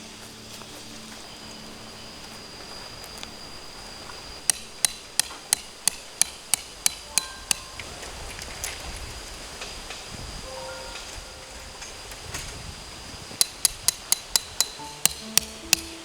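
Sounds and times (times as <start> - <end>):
tent peg being hammered: 4.5 - 7.8, 13.4 - 16.0.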